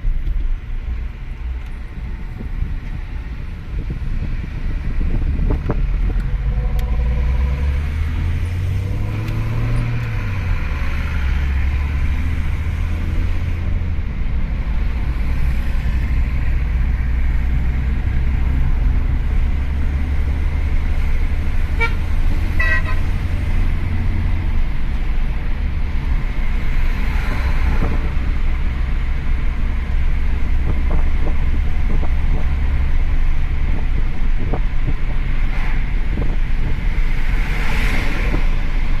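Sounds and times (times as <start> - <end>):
motor vehicle rumbling: 0.0 - 39.0
horn-like toots: 21.7 - 23.1.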